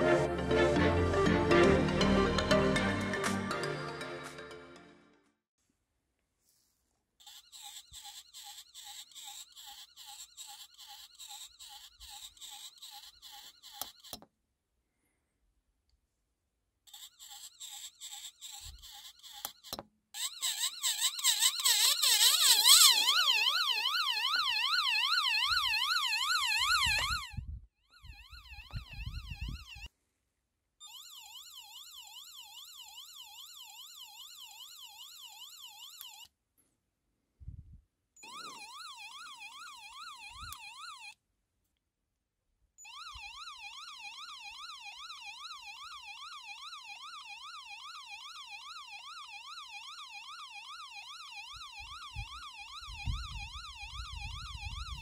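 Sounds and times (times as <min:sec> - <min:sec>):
electronic alarm siren: 0:20.2 - 0:29.9, 0:30.8 - 0:36.3, 0:38.2 - 0:41.2, 0:42.8 - 0:55.0.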